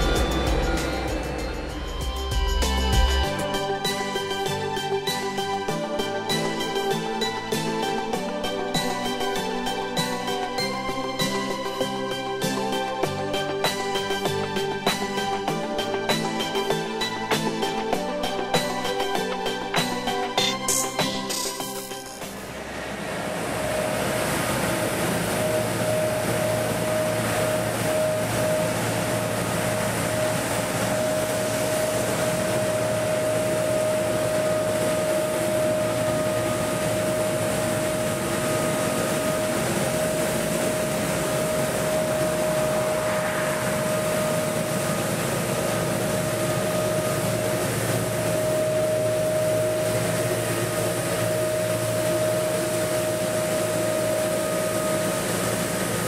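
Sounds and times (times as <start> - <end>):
heavy machinery noise: 0.0 - 4.0, 21.6 - 56.0
high whine: 0.0 - 56.0.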